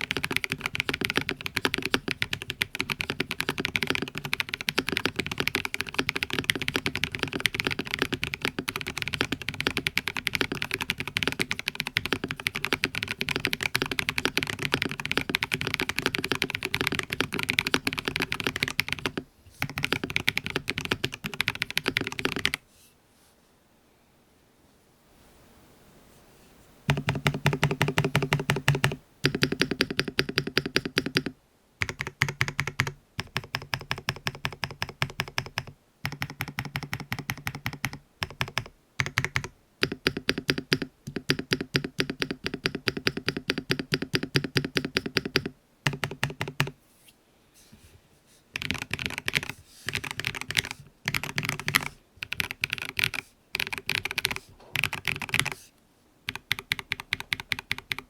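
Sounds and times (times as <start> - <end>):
mechanical keyboard typing: 0.0 - 22.6, 26.9 - 46.8, 48.6 - 55.6, 56.3 - 58.0.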